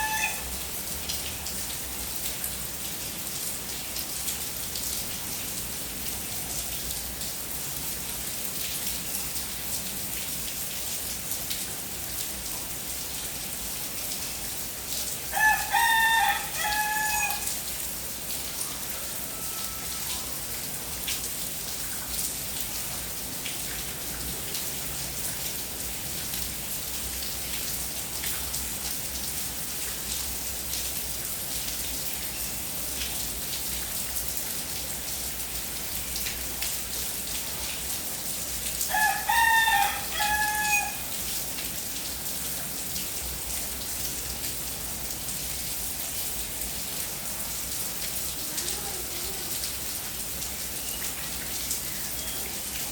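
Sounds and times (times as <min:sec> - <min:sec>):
rooster crowing: 0:00.0 - 0:00.5, 0:15.3 - 0:17.5, 0:18.6 - 0:20.4, 0:38.9 - 0:41.1
steady rain falling: 0:00.0 - 0:52.9.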